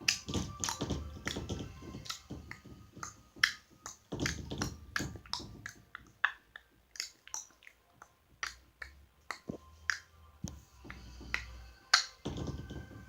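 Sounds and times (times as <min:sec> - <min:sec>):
tongue clicks: 0:05.2 - 0:10.1.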